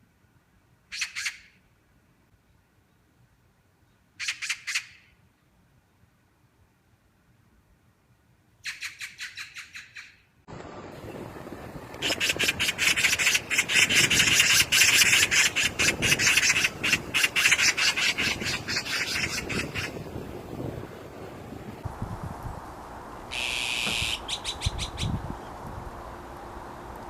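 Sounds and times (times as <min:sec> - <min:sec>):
magpie chattering: 0:12.0 - 0:20.0, 0:23.3 - 0:25.2.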